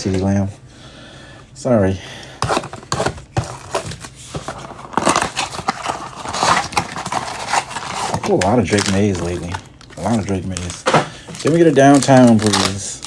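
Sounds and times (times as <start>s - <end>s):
foil wrapper crinkling: 3.4s - 13.0s.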